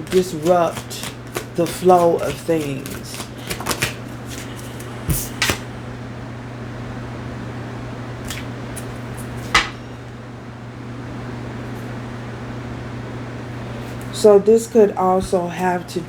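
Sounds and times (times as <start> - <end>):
cards tapping and clicking on table: 0.0 - 5.6
steady low hum: 0.0 - 16.0.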